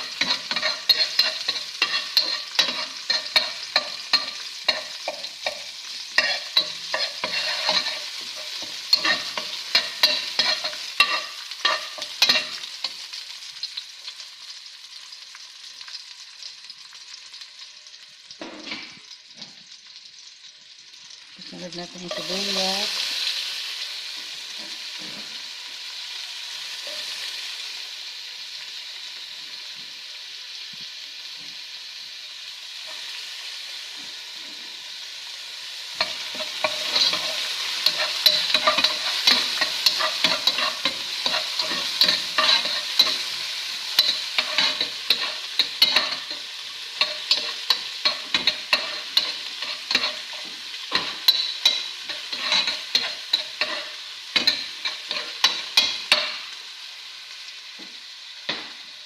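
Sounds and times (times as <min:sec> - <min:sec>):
spatula scraping a pan: 0:00.0 - 0:13.1, 0:36.0 - 0:56.5
onions sizzling in hot oil: 0:00.0 - 0:59.0.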